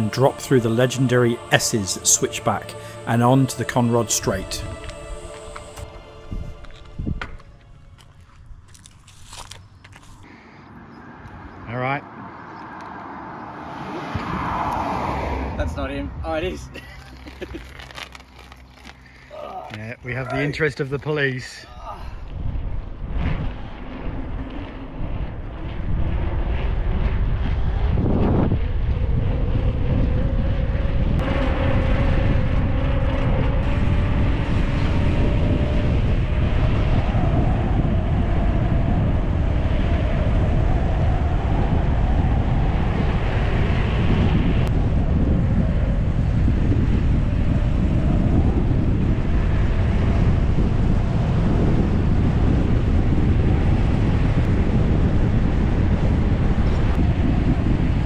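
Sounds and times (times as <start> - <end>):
faint rising whine: 0.0 - 10.0, 22.3 - 58.0
wind rushing over microphone: 0.0 - 58.0.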